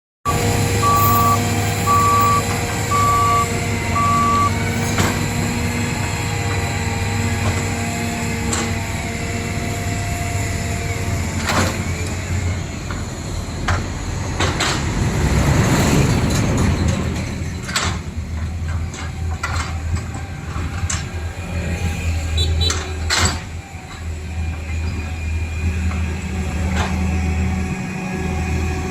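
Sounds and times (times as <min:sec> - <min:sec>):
reversing beeper: 0:00.3 - 0:05.2.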